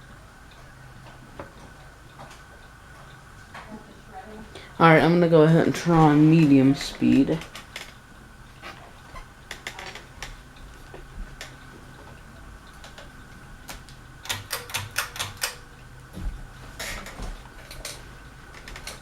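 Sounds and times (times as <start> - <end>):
ceiling fan motor hum: 0.0 - 19.0
sharp clicks and ticks: 9.5 - 15.7.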